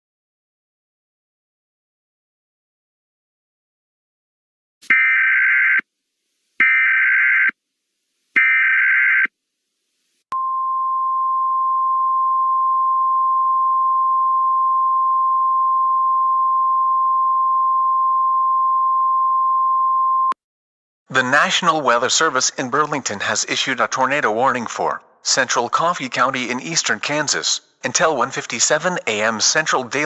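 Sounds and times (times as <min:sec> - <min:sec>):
steady alarm tone: 0:04.9 - 0:05.8.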